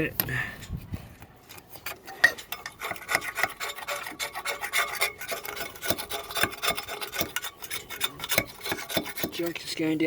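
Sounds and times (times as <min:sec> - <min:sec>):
hand tool rasping: 0:01.5 - 0:09.7.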